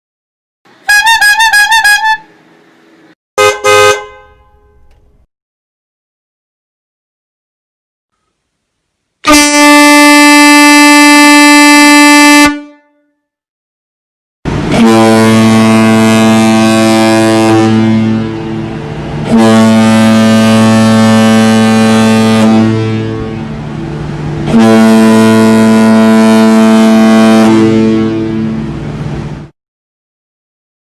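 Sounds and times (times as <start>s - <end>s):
vehicle horn blast: 0.8s - 2.3s, 3.4s - 4.9s, 9.2s - 13.1s, 14.7s - 23.6s, 24.4s - 28.7s
deep ship's horn blasts: 0.9s - 2.3s, 9.2s - 12.9s, 14.5s - 29.5s.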